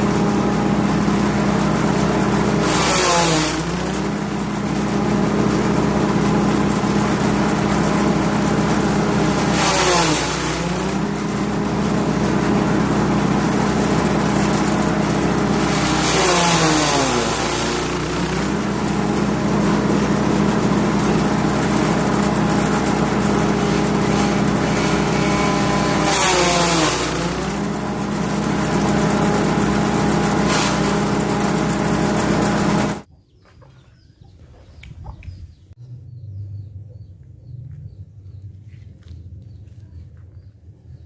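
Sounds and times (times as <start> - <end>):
petrol engine running: 0.0 - 33.1
birds chirping: 33.1 - 41.0.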